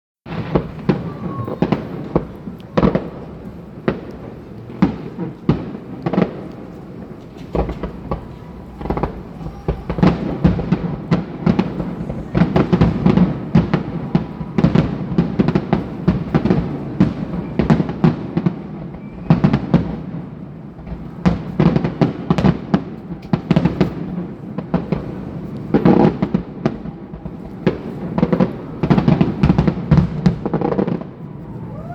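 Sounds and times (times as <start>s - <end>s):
firework shells bursting: 0.3s - 17.9s.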